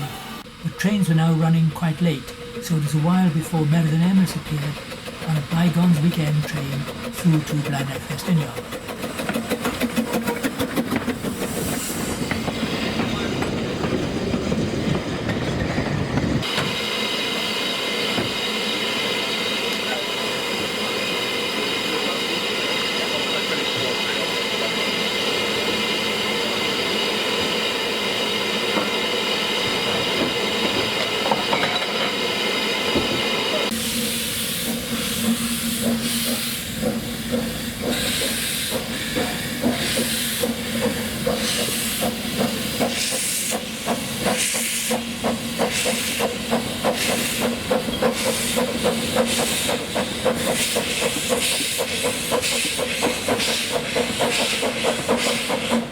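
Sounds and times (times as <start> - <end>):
steam locomotive exhaust beats: 0.0 - 55.9
hiss of steam: 11.0 - 13.5, 33.0 - 55.9.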